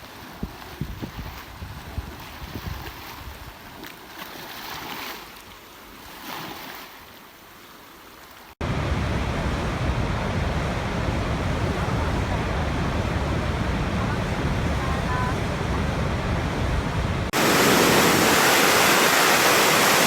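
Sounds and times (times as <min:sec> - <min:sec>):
water rushing: 0:04.8 - 0:20.0.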